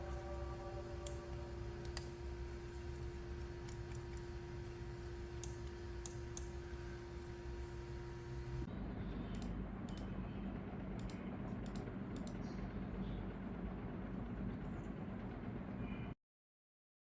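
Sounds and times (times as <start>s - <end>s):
faint steady tone: 0.0s - 9.4s
low hum: 0.0s - 16.2s.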